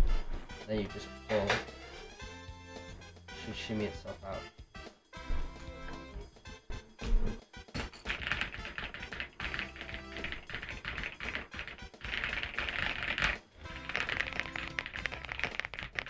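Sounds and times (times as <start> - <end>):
background music: 0.0 - 16.0
mechanical keyboard typing: 8.0 - 16.0.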